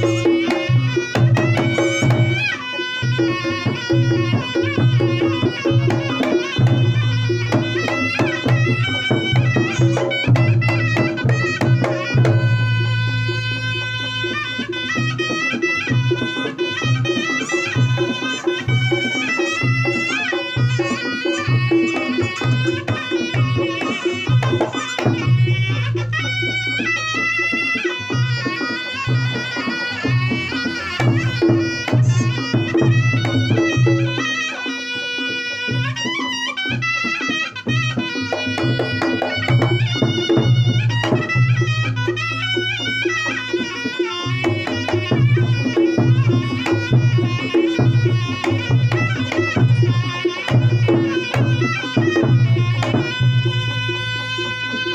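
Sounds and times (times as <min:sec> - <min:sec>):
drums and pitched percussion: 0:00.0 - 0:54.9
shawm playing ornamented melody: 0:00.0 - 0:54.9.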